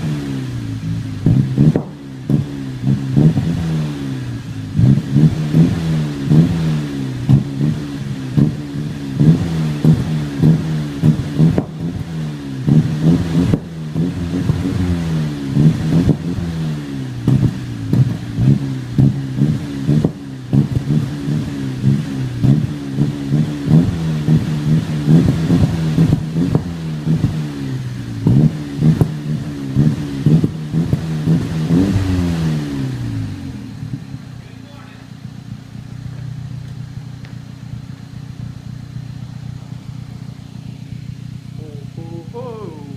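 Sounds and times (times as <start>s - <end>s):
exhaust pops: 0.0s - 3.7s, 7.2s - 42.9s
car engine revving: 0.0s - 42.9s.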